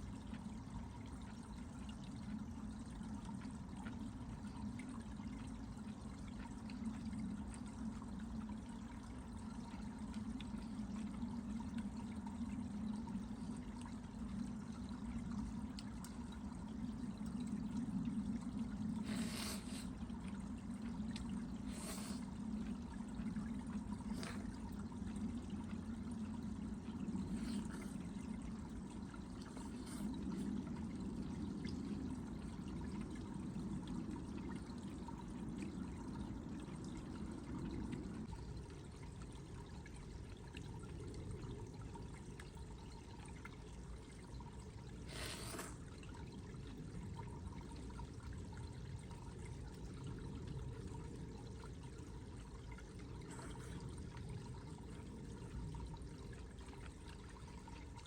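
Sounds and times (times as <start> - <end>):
water trickling: 0.0 - 58.0.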